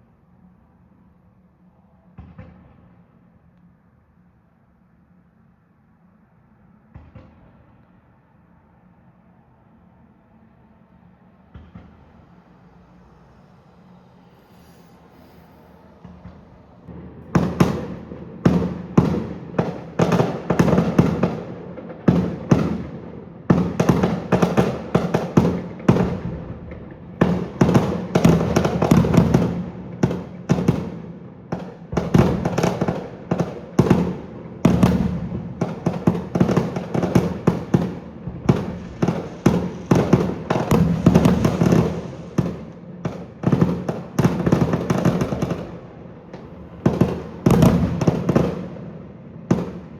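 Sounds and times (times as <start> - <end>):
fireworks bursts and crackling bangs: 6.9 - 7.9, 14.3 - 49.9.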